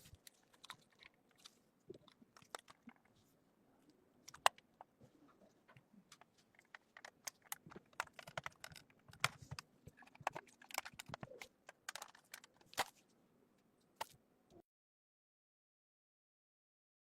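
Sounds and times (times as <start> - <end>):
small clicks and taps: 5.6 - 12.9.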